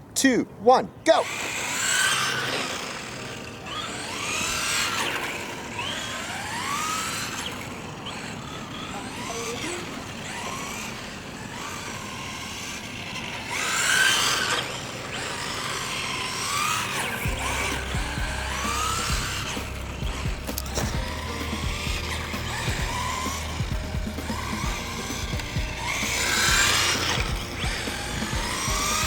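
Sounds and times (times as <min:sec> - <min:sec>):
electric motor whining: 0:01.2 - 0:29.0
tyre noise on pavement: 0:17.0 - 0:29.0.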